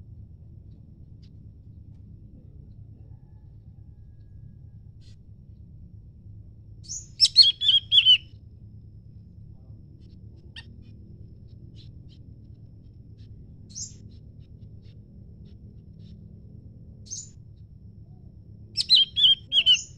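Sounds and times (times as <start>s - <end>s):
songbird chirping: 6.8s - 8.2s, 13.7s - 14.2s, 18.8s - 19.9s.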